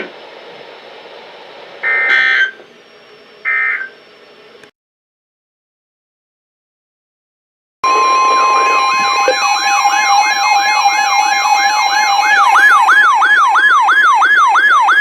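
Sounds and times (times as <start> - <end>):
siren yelping: 3.5 - 3.9, 7.8 - 15.0
two-tone electronic alert: 7.8 - 14.2
high-pitched siren sweep: 7.8 - 15.0.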